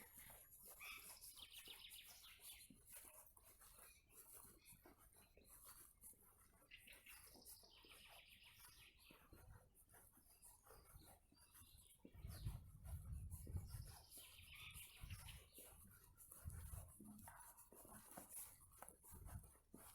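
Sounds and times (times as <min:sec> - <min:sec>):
faint bird chirping: 0:00.0 - 0:09.5, 0:10.2 - 0:15.9.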